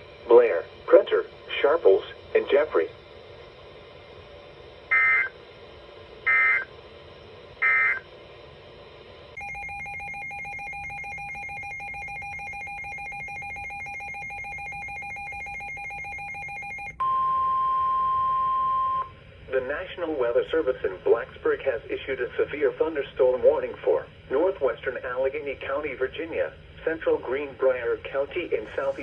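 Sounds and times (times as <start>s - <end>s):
loud steady alert tone: 4.9s - 5.4s, 6.3s - 6.7s, 7.6s - 8.0s, 9.4s - 17.1s.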